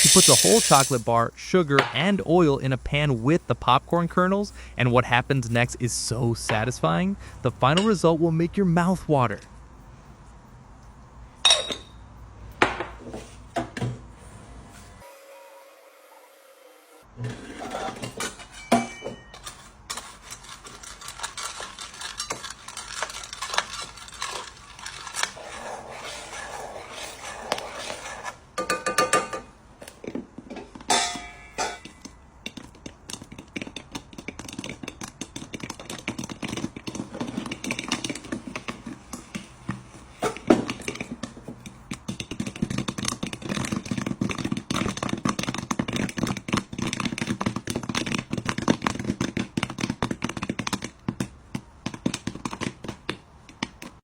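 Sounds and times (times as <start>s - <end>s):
popcorn popping: 0.0s - 1.1s, 19.9s - 25.4s, 30.8s - 39.4s, 40.3s - 54.0s
utensil scraping in a pan: 0.0s - 1.1s, 17.2s - 18.5s, 19.4s - 29.2s.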